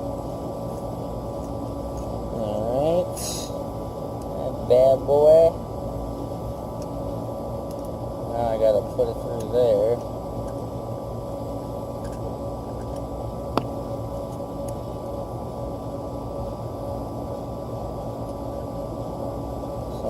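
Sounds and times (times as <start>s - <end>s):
machinery humming: 0.0s - 20.0s.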